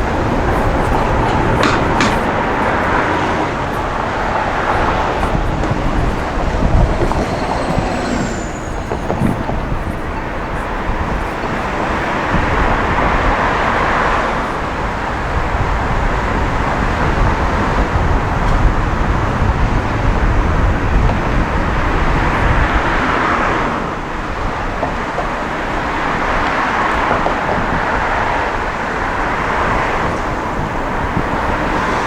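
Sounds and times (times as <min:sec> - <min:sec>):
passing traffic: 0:00.0 - 0:32.0
tyres rushing on road: 0:00.0 - 0:32.0
wind rumble on microphone: 0:00.0 - 0:32.0.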